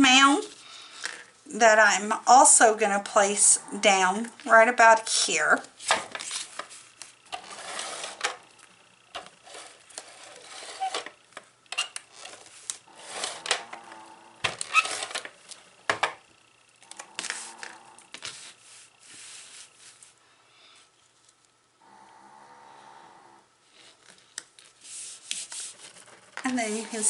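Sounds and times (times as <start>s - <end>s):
paper rustling: 5.8s - 8.3s.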